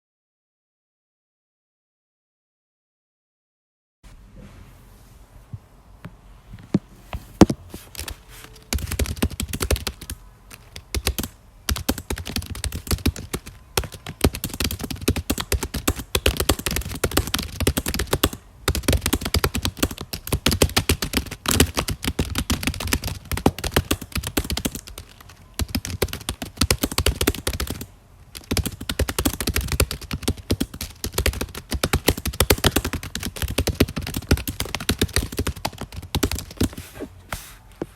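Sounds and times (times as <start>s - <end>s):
computer keyboard typing: 7.9s - 36.8s.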